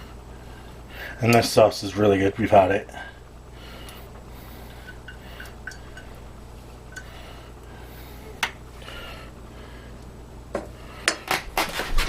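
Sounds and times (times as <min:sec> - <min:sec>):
low hum: 0:00.0 - 0:11.1
utensil clinking on cup and bowl: 0:04.8 - 0:06.2.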